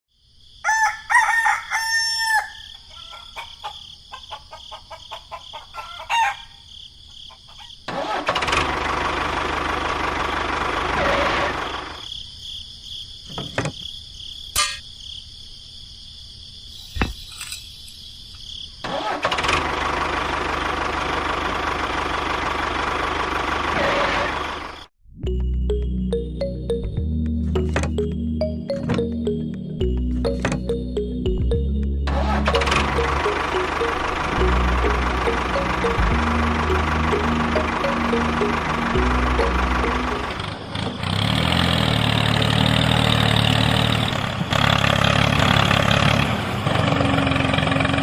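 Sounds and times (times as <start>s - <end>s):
rooster crowing: 0.6s - 6.6s
loud steady machine noise: 32.4s - 40.7s.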